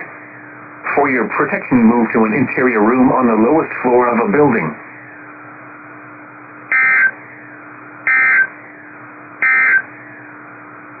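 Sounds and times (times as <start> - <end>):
faint hum: 0.0 - 11.0
receiver hiss: 0.0 - 11.0
data bursts: 6.7 - 7.2, 8.1 - 8.5, 9.4 - 9.9.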